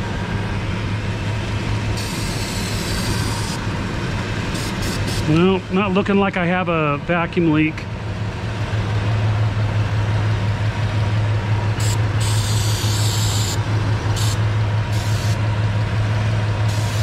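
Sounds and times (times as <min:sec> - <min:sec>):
engine idling: 0:00.0 - 0:17.0
spray can hissing: 0:11.8 - 0:13.6, 0:14.2 - 0:15.4, 0:16.7 - 0:17.0.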